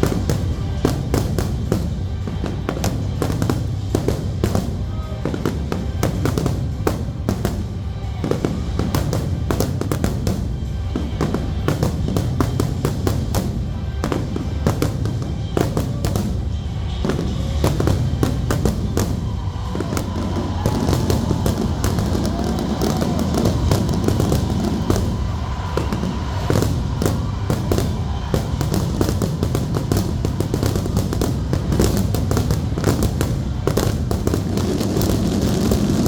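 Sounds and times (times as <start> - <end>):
fireworks bursting and crackling: 0.0 - 36.0
music over loudspeakers: 0.0 - 36.0.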